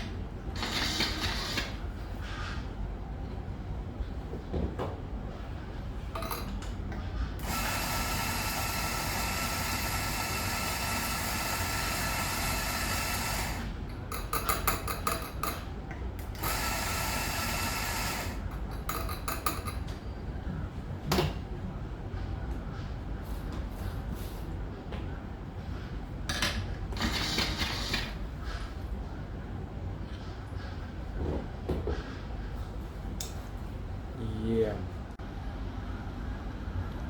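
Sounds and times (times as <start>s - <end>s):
coffee grinder running: 7.4s - 13.7s, 16.3s - 18.4s.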